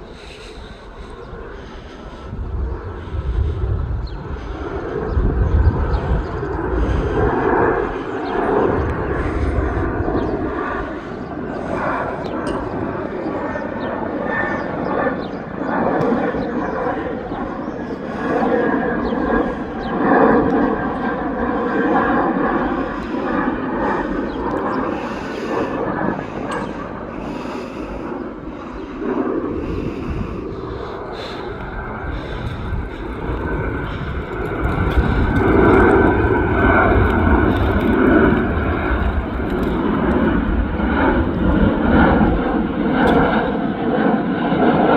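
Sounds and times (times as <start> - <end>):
jet engine rumble: 0.0 - 44.9
wind buffeting microphone: 0.0 - 44.9.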